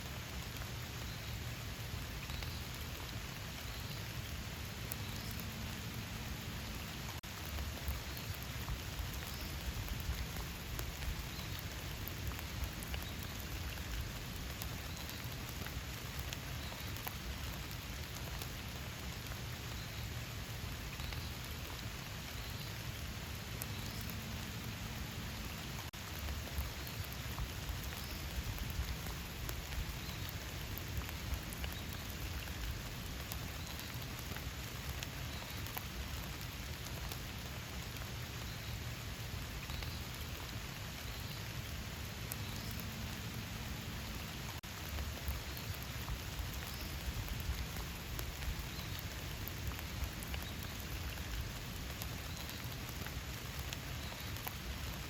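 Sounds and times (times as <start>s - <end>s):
rain falling in forest: 0.0s - 55.0s
raindrops ticking: 0.0s - 55.0s.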